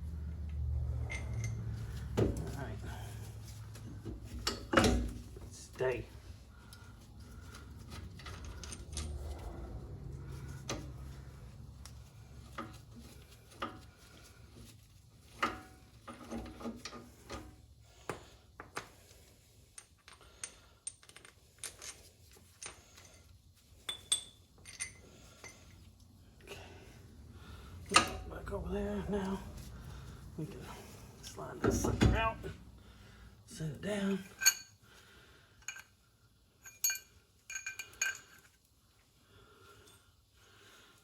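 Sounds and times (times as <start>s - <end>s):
metal tools clinking: 0.9s - 3.3s, 6.7s - 9.6s, 19.7s - 25.9s, 34.1s - 34.8s, 35.6s - 36.0s, 36.6s - 38.7s.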